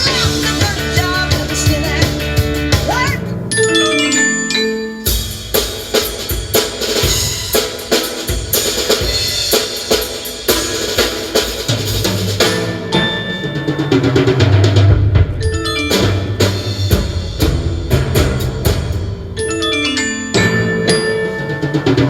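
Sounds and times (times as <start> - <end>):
rock music on car stereo: 0.0 - 3.4.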